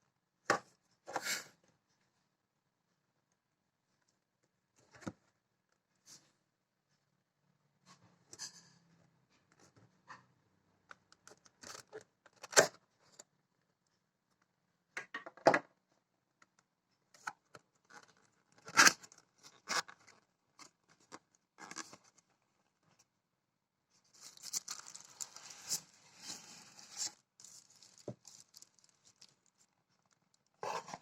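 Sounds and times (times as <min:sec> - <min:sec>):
packaging rustling and tearing: 0:24.2 - 0:31.0.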